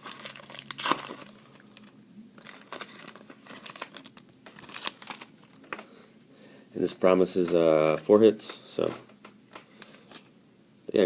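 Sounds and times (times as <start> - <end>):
foil wrapper ripping: 0.0 - 5.7
foil wrapper crinkling: 0.0 - 5.9.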